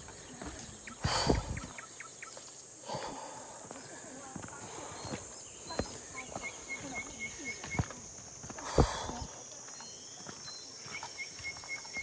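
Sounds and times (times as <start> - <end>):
footsteps on trail: 0.0 - 12.0
high insect drone: 0.0 - 12.0.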